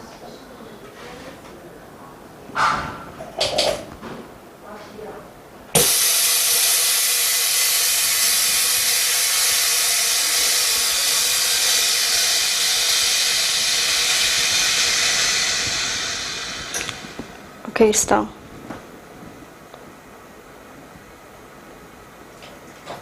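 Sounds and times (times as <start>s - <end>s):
compressed air hissing: 5.8s - 17.9s.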